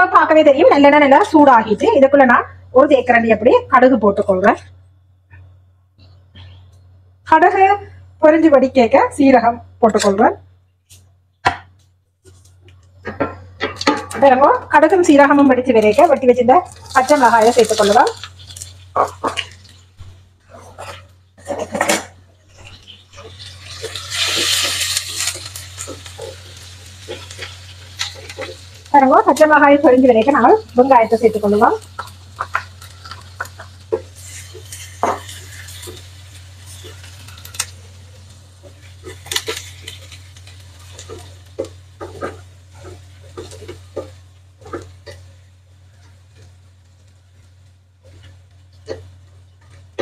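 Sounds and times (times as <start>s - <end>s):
chillies sizzling in hot oil: 12.2s - 50.0s
spoon scraping a frying pan: 16.7s - 28.8s, 30.3s - 38.0s, 38.6s - 46.6s.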